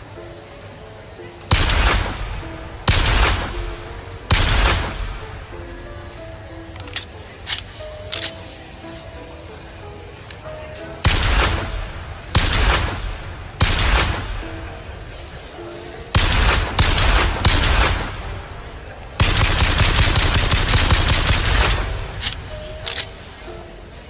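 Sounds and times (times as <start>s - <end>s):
automatic gunfire burst: 1.5s - 5.2s, 11.0s - 11.8s, 12.4s - 14.6s, 16.2s - 18.4s, 19.2s - 23.1s
pistol shots ringing: 1.5s - 6.0s, 11.0s - 15.3s, 16.1s - 23.4s.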